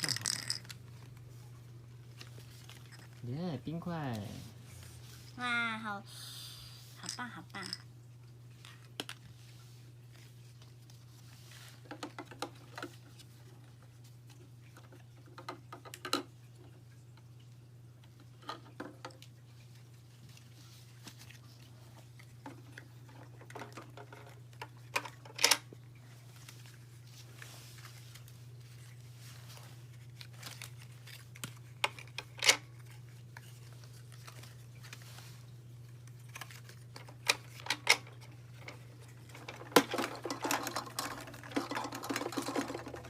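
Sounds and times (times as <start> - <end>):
toy pieces clicking and knocking: 0.0 - 0.7, 7.0 - 7.8
low steady hum: 0.0 - 43.0.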